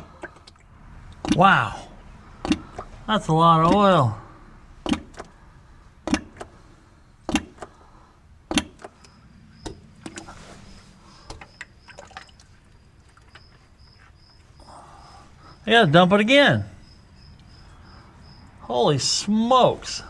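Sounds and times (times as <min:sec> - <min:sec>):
crickets chirping: 0:00.0 - 0:20.0
sharp knocks: 0:01.2 - 0:01.8, 0:02.4 - 0:03.0, 0:03.6 - 0:04.2, 0:04.8 - 0:05.3, 0:06.0 - 0:06.6, 0:07.2 - 0:07.8, 0:08.5 - 0:09.0.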